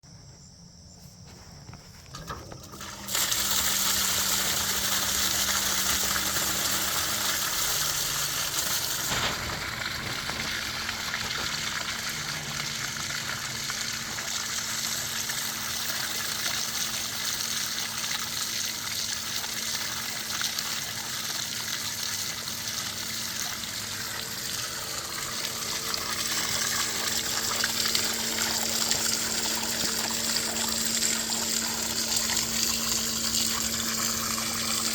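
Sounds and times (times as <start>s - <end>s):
low steady pump hum: 1.1s - 34.9s
water gushing from pipe: 2.1s - 34.9s.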